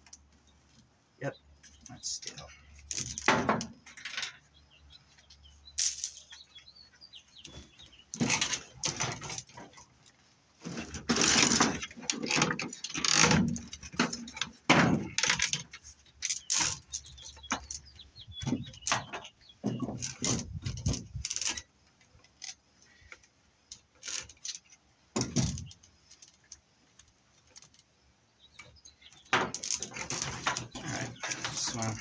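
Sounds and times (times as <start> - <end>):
metal cable rattling and clattering: 8.1 - 21.7, 29.2 - 32.0.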